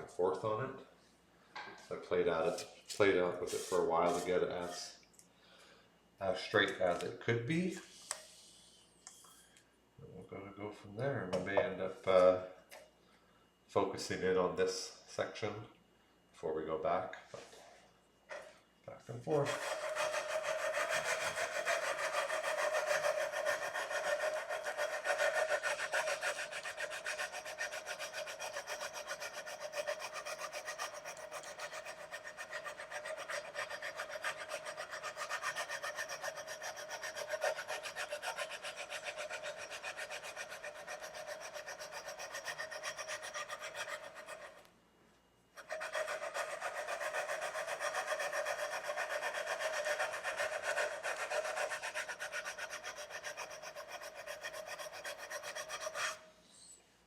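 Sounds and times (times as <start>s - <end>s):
sandpaper scraping metal frets: 3.4s - 4.8s, 19.3s - 44.6s, 45.6s - 56.2s.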